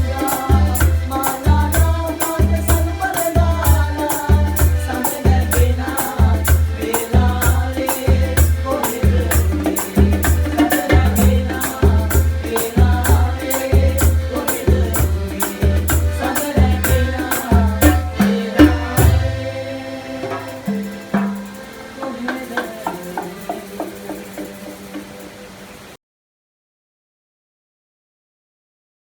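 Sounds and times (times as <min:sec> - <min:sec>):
calypso band music: 0:00.0 - 0:25.8
bass notes: 0:17.7 - 0:20.2
shaker rattle: 0:20.6 - 0:25.4.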